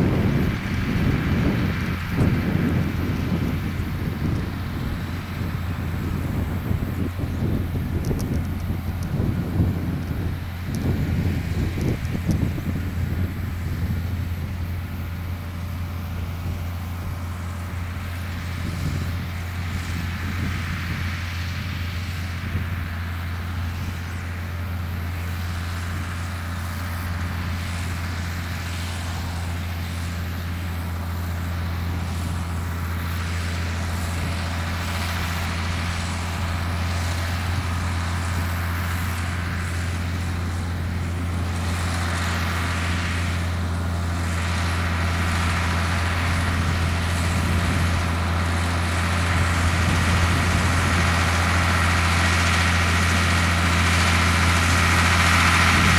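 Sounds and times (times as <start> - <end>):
tractor diesel engine droning: 0.0 - 55.9.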